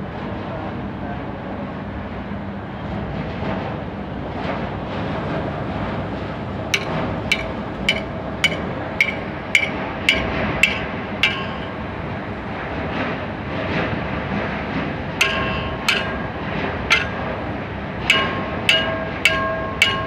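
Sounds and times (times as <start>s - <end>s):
steady background noise: 0.0s - 20.0s
hammer blows on steel: 6.8s - 11.9s, 15.2s - 17.4s, 18.0s - 20.0s.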